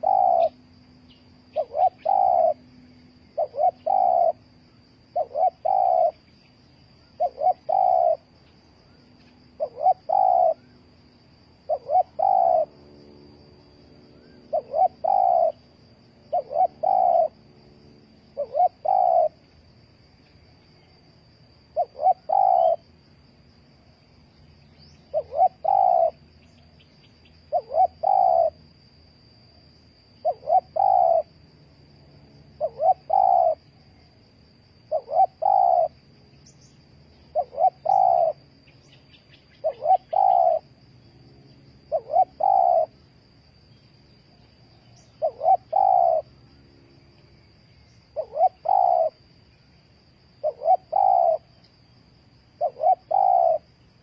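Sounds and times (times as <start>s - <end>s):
dove cooing: 0.0s - 0.7s, 1.5s - 6.2s, 7.0s - 8.3s, 9.5s - 10.8s, 11.5s - 12.9s, 14.2s - 17.4s, 18.3s - 19.4s, 21.7s - 22.9s, 25.1s - 26.2s, 27.4s - 28.6s, 30.2s - 31.4s, 32.6s - 33.7s, 34.8s - 36.0s, 37.3s - 38.5s, 39.5s - 40.8s, 41.9s - 43.0s, 44.8s - 46.4s, 48.1s - 49.3s, 50.4s - 51.6s, 52.5s - 53.7s.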